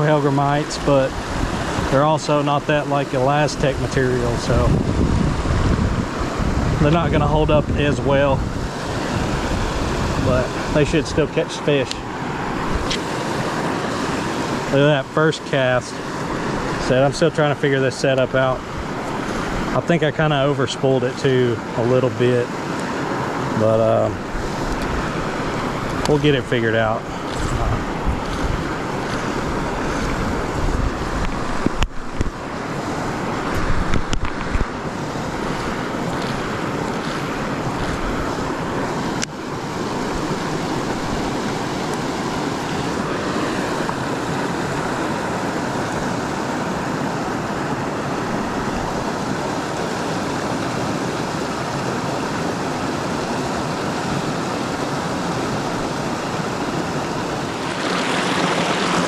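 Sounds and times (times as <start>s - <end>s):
wind buffeting microphone: 0.0s - 14.8s, 18.3s - 49.5s, 54.2s - 59.0s
creek water flowing: 0.0s - 59.0s.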